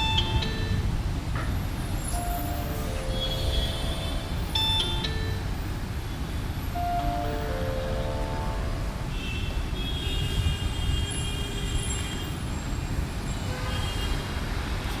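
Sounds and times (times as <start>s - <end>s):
high-pitched phone ringtone: 0.0s - 0.9s, 2.1s - 5.6s, 6.8s - 9.0s.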